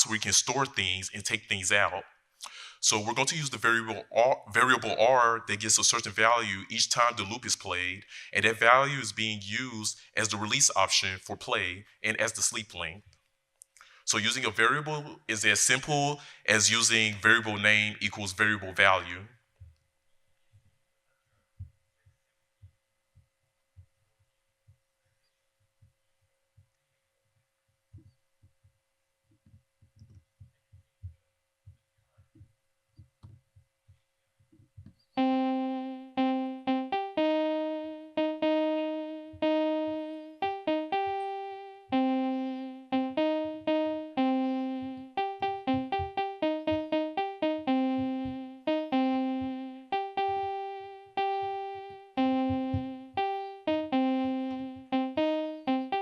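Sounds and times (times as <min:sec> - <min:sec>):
electric piano synth melody: 0:00.0 - 0:00.5, 0:02.8 - 0:05.2, 0:35.2 - 0:56.0.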